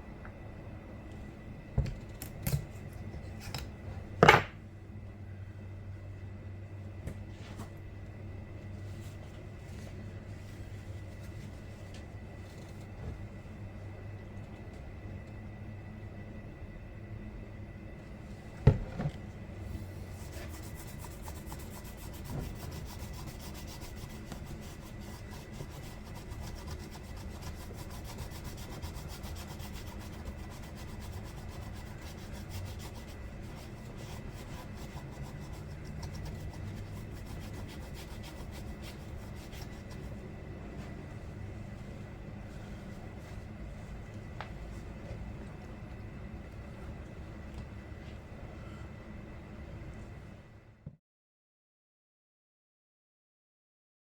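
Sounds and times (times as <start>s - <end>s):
rapid scrubbing on chainsaw body: 20.3s - 40.1s.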